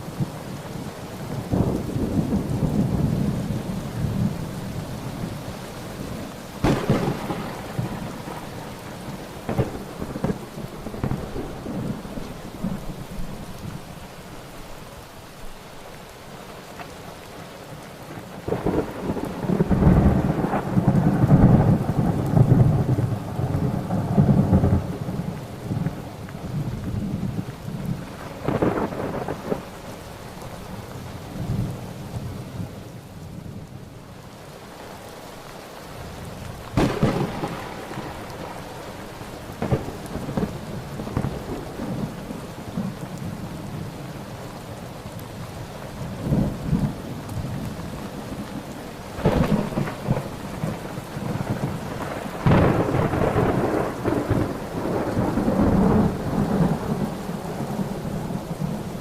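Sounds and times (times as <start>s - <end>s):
steady rain falling: 0.0s - 59.0s
thunder claps rumbling: 1.2s - 5.4s, 6.0s - 13.9s, 18.2s - 29.8s, 36.7s - 43.9s, 46.1s - 59.0s.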